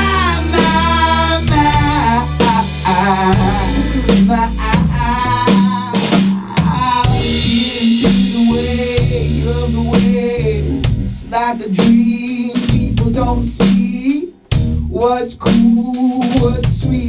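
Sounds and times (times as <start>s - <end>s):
rock band playing: 0.0s - 17.0s.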